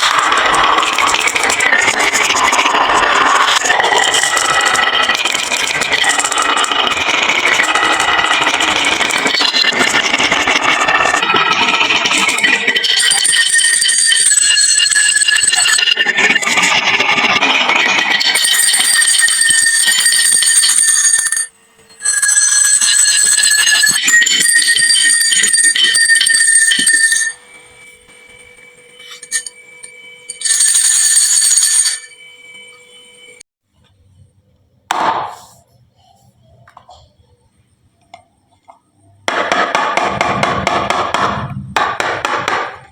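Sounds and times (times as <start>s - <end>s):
marbles clattering down a marble run: 0.0s - 27.4s
ringing tone: 0.0s - 33.4s.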